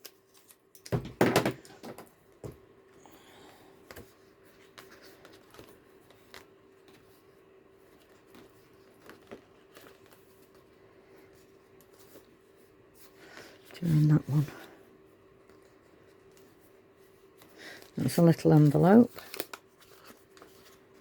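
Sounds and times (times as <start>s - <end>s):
faint steady hum: 0.0s - 21.0s
paper rustling: 3.9s - 14.7s, 15.4s - 21.0s.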